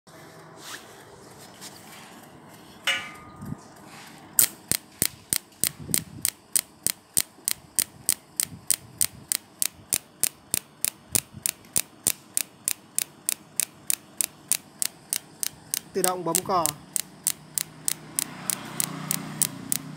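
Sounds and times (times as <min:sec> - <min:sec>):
machine clicking a trigger: 0:04.4 - 0:16.0, 0:16.6 - 0:19.9.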